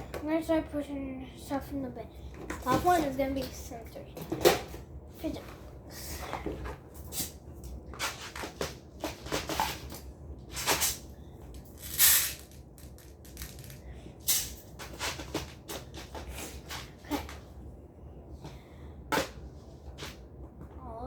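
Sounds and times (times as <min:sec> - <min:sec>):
toys rustling and knocking: 0:02.3 - 0:04.8, 0:08.0 - 0:17.5.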